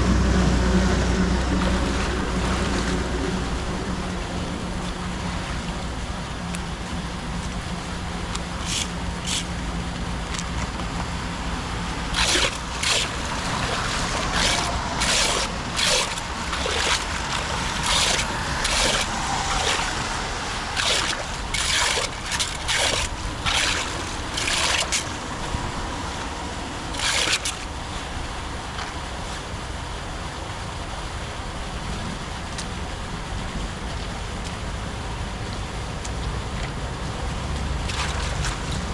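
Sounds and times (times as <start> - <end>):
floodwater rushing and sloshing: 0.0 - 38.9
sharp water splashes: 11.5 - 27.8.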